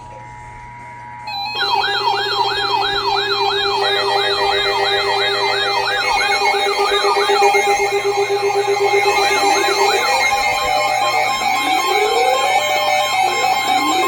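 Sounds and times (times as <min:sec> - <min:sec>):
steady tone: 0:00.0 - 0:14.0
electronic sirens yelping: 0:01.3 - 0:14.0.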